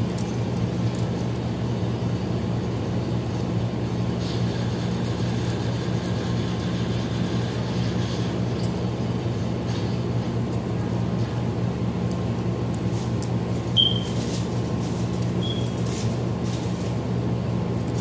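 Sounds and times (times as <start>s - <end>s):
steady low hum: 0.0s - 18.0s
short high squeak: 13.8s - 14.2s.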